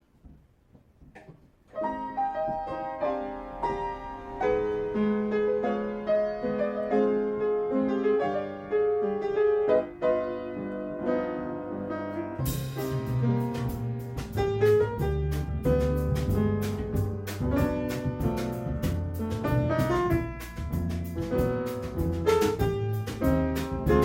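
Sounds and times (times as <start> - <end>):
bass: 0.0 - 24.0
jazz piano: 0.0 - 24.0
drum kit cymbals: 12.5 - 24.0.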